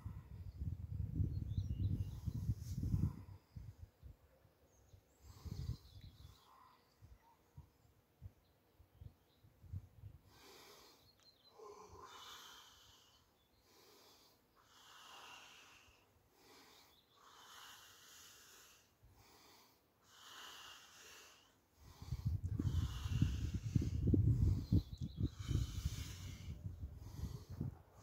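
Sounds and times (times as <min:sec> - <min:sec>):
person breathing slowly: 0:02.0 - 0:03.8, 0:05.2 - 0:07.2, 0:10.2 - 0:28.0.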